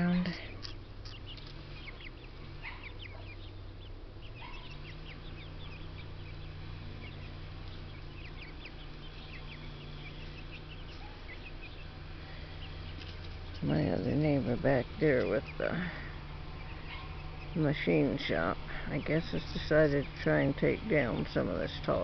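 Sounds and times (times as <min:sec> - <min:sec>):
low engine hum: 0:00.0 - 0:22.0
small dogs yapping: 0:01.8 - 0:03.5, 0:04.3 - 0:05.8, 0:09.4 - 0:11.8, 0:16.6 - 0:17.4.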